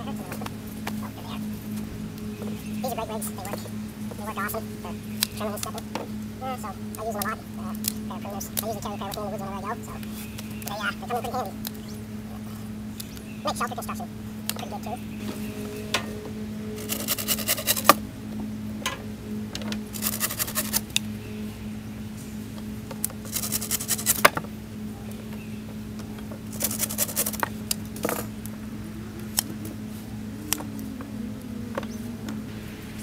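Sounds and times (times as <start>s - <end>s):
pruners cutting sticks: 0.0s - 18.1s, 18.8s - 21.2s, 22.5s - 24.6s, 25.2s - 31.2s
steady low hum: 0.0s - 33.0s
pruner clicks: 23.0s - 24.4s.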